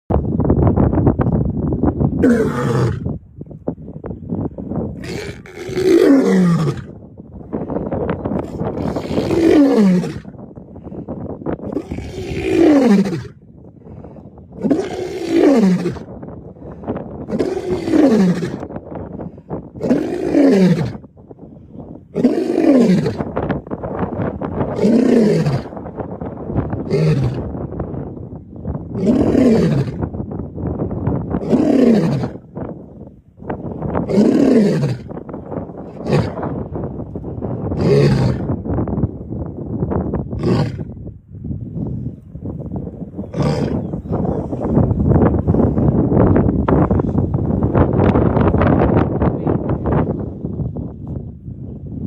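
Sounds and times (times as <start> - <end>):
lion roaring: 2.2 - 3.1, 5.0 - 7.0, 8.4 - 10.3, 11.7 - 13.4, 14.6 - 16.1, 17.3 - 18.7, 19.8 - 21.0, 22.2 - 23.3, 24.6 - 25.8, 26.8 - 27.5, 29.0 - 30.0, 31.4 - 32.5, 34.0 - 35.2, 35.9 - 36.6, 37.7 - 38.6, 40.4 - 41.0, 43.2 - 44.8
lion grunting: 5.0 - 6.9, 8.4 - 10.3, 14.6 - 16.1, 17.3 - 18.6, 22.2 - 23.3, 31.4 - 32.4, 37.8 - 38.5, 43.3 - 44.8
lion grunting calls: 43.2 - 44.8.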